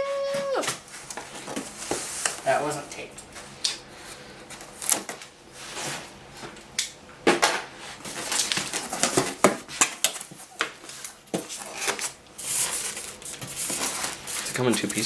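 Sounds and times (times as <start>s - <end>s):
packaging rustling: 8.1s - 15.0s.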